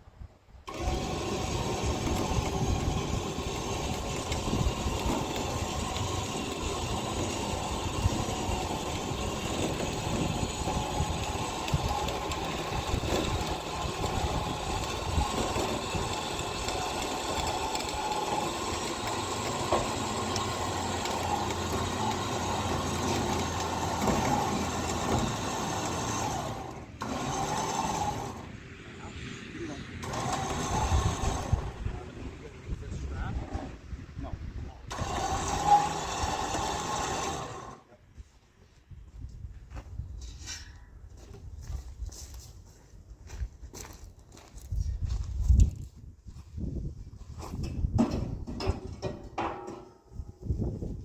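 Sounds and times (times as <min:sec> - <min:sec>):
electric winch motor whining: 0:00.6 - 0:32.5, 0:34.9 - 0:37.9.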